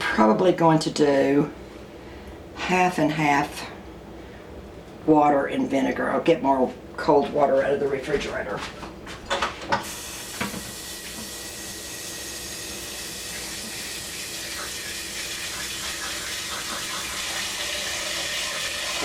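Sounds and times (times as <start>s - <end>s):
water pouring into a container: 12.4s - 19.0s.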